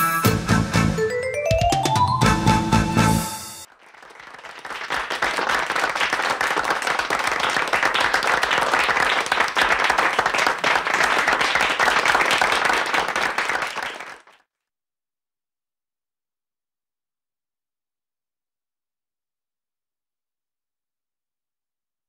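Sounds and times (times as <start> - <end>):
audience applauding: 3.6 - 14.4.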